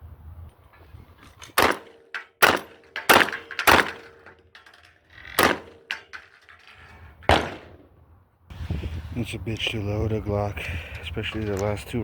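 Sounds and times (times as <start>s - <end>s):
gunshots outdoors: 1.4s - 4.3s, 5.3s - 6.0s, 7.2s - 8.0s.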